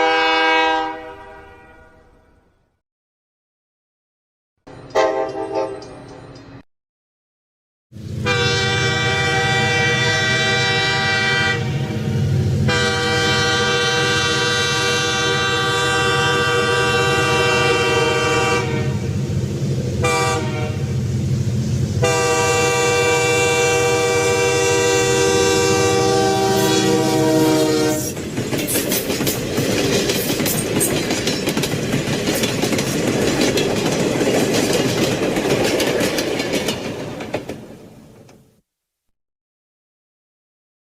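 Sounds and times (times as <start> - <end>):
locomotive air horn: 0.0 - 2.5, 4.9 - 5.9, 8.2 - 19.2, 20.0 - 21.0, 22.0 - 28.2
low rumble of passing train: 4.7 - 6.6, 7.9 - 38.6
train wheels clattering over rail joints: 28.0 - 38.3.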